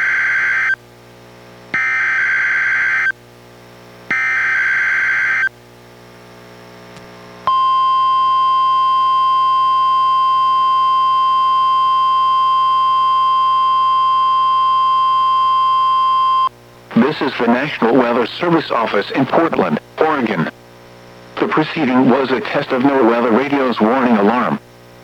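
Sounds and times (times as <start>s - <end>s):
steady single-pitch alarm tone: 0.0s - 0.8s, 1.8s - 3.2s, 4.1s - 5.5s, 7.5s - 16.5s.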